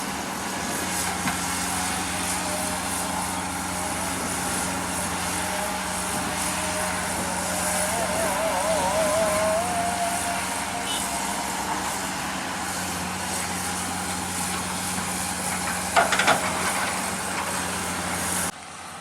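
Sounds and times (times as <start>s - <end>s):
diesel engine running: 0.0s - 19.0s
wavering higher tone: 1.8s - 13.0s.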